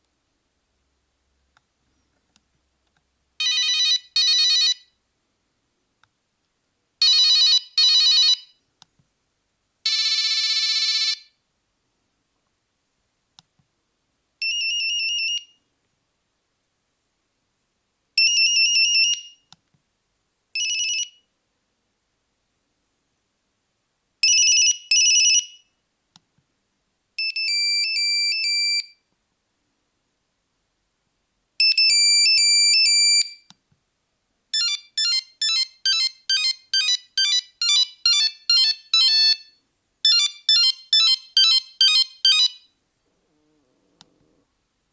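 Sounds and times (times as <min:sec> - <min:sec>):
monophonic phone ringtones: 0:34.6 - 0:42.6
faint clicks: 0:43.9 - 0:44.4.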